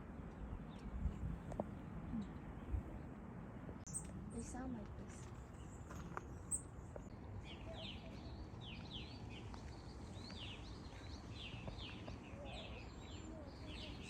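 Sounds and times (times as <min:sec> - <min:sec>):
outdoor background noise: 0:00.0 - 0:14.0
small bird chirping: 0:03.9 - 0:14.0.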